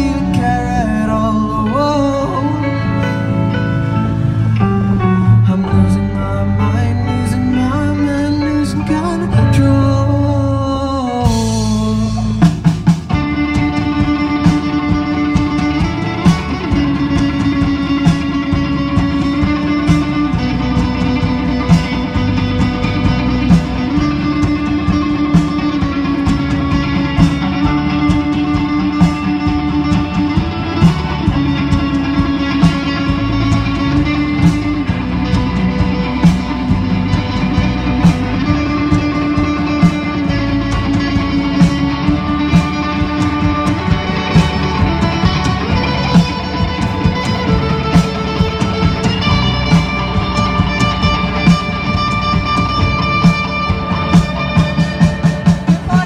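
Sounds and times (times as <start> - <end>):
instrumental music with held notes: 0.0 - 56.0
steady beat: 11.3 - 56.0.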